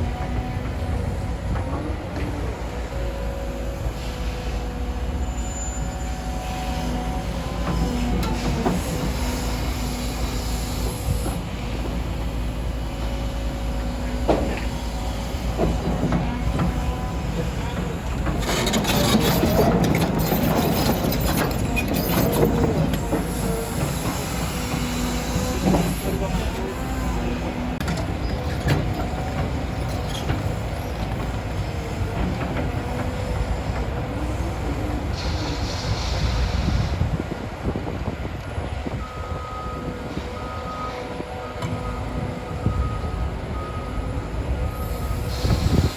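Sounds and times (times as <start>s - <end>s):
excavator diesel engine running: 0.0s - 45.9s
hydraulic hiss: 35.1s - 37.1s, 44.8s - 45.9s.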